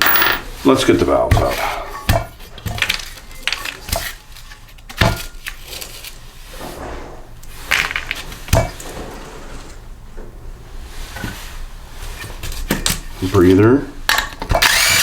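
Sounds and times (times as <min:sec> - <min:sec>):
tools knocking and clattering: 0:00.0 - 0:00.5.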